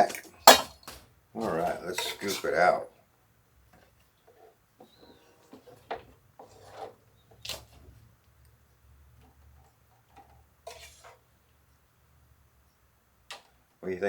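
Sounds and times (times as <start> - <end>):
utensil scraping a pan: 0.0 - 2.9, 3.7 - 8.2, 9.1 - 11.4.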